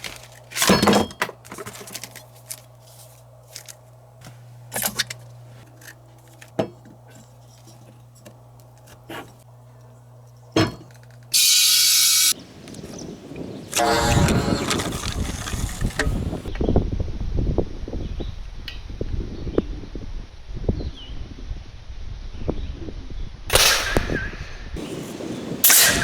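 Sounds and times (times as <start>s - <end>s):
rustling: 0.0s - 9.4s
steady low hum: 1.4s - 11.3s.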